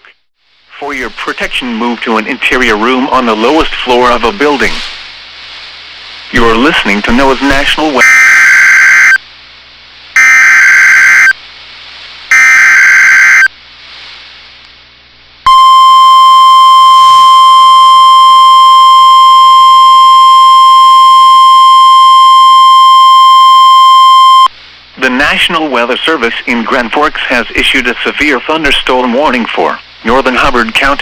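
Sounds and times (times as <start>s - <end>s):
steady warning alarm tone: 7.6s - 9.2s, 10.2s - 11.4s, 12.3s - 13.5s, 15.5s - 24.5s
digital data bursts: 10.2s - 11.3s, 12.3s - 13.5s.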